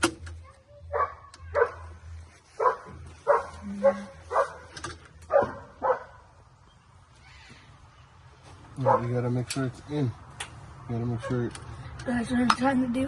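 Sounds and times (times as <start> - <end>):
dog barking: 0.9 - 2.0, 2.6 - 6.3, 8.8 - 9.2.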